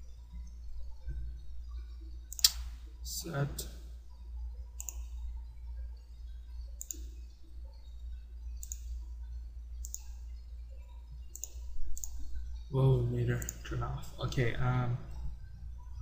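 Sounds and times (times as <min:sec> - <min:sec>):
steady low hum: 0:00.0 - 0:16.0
computer mouse clicking: 0:02.3 - 0:02.7, 0:04.8 - 0:05.2, 0:06.8 - 0:07.2, 0:08.6 - 0:09.0, 0:09.8 - 0:10.2, 0:11.2 - 0:12.3, 0:13.4 - 0:13.7.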